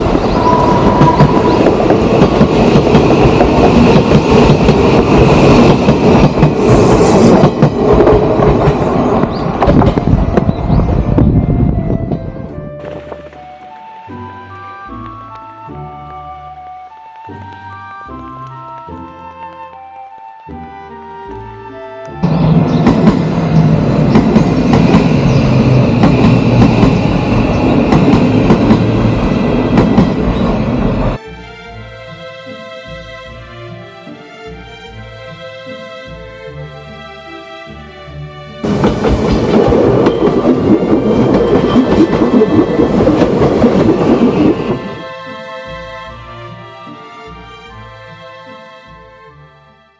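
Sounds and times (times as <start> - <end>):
electric train passing: 0.0 - 19.6, 21.1 - 31.2, 37.8 - 49.0
wheels clicking over rail joints: 38.6 - 44.8.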